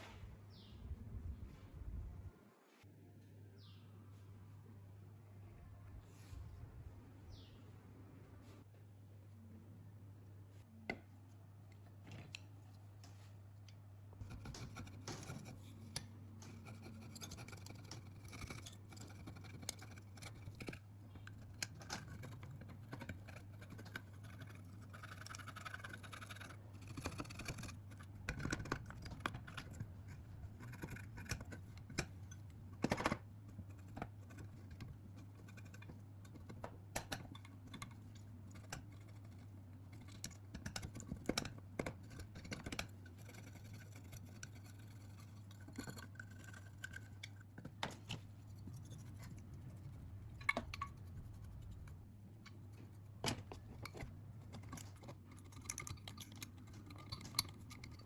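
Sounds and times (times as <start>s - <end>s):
steady low hum: 0.0s - 58.0s
scratching and scraping small parts: 11.7s - 58.0s.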